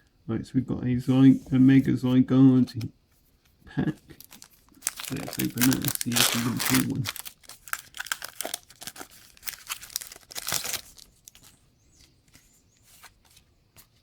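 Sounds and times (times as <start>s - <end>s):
cards rustling: 2.6s - 14.0s
wrapper tearing and crinkling: 4.1s - 11.6s.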